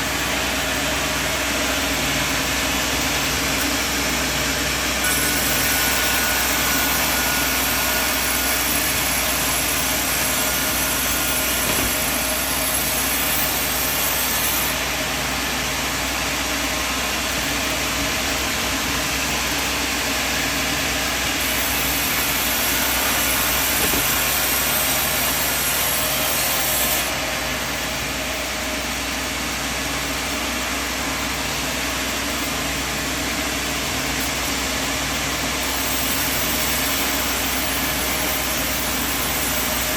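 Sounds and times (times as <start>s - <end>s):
sawmill machine drone: 0.0s - 39.9s.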